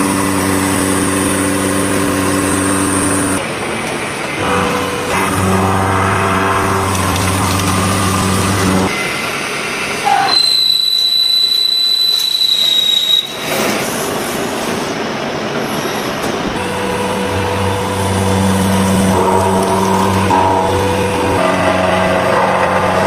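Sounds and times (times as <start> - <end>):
machine hum: 0.0 - 10.0, 16.5 - 23.0
high steady squeal: 4.0 - 15.0, 15.8 - 23.0.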